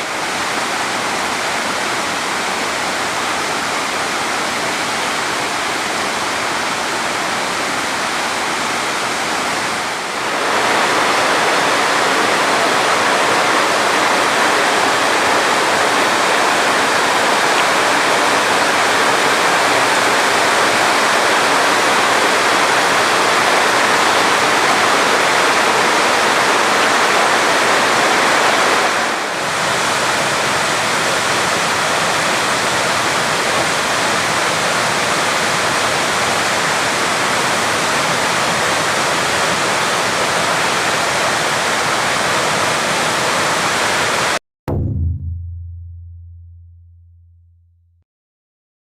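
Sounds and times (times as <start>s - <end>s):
fast-flowing stream water: 0.0s - 44.4s.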